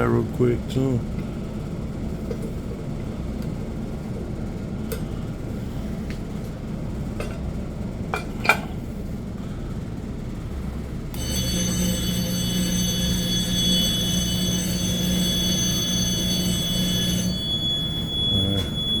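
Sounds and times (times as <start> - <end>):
steady hum: 8.8 - 19.0
fire alarm sounding: 11.2 - 19.0.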